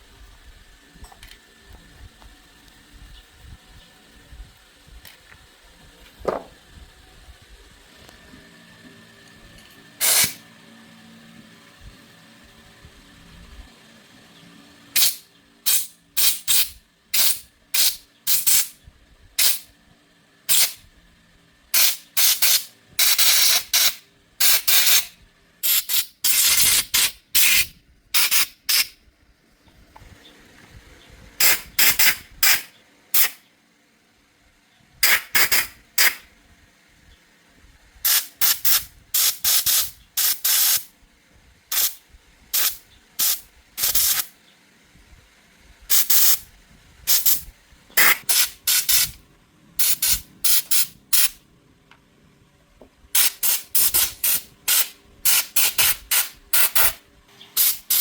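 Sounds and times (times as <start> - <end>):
pressurised spray hissing: 10.0 - 10.4, 15.0 - 18.8, 19.4 - 19.7, 20.5 - 20.8, 21.7 - 28.9, 31.4 - 33.4, 35.0 - 36.2, 38.0 - 40.9, 41.7 - 44.3, 45.9 - 46.5, 47.1 - 49.2, 49.8 - 51.4, 53.2 - 58.0.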